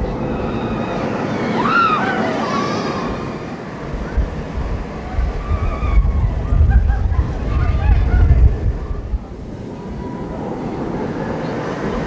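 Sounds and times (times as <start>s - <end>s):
rising and falling voice: 0.0s - 9.1s
low rumble: 0.0s - 11.3s
wind rushing over microphone: 0.0s - 12.0s.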